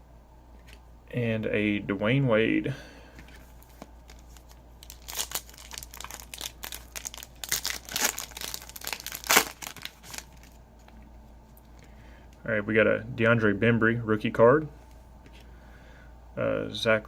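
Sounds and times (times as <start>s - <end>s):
wrapper tearing and crinkling: 4.0s - 10.6s.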